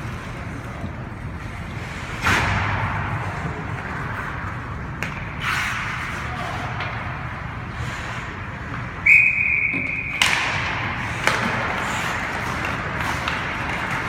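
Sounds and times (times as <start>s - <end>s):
hockey rink noise: 0.0s - 14.0s
referee's whistle: 9.0s - 10.2s.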